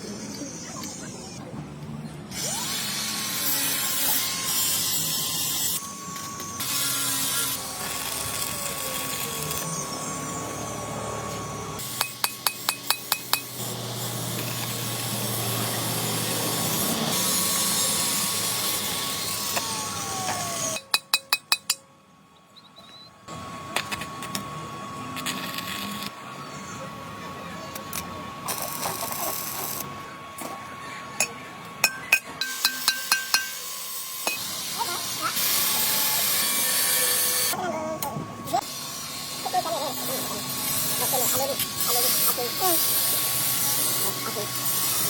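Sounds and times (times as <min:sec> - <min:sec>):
power tool whining: 0:02.3 - 0:21.0, 0:31.2 - 0:45.0.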